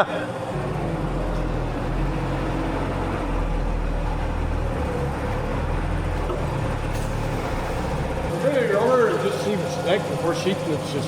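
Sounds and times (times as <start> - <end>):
machinery low drone: 0.5 - 11.0.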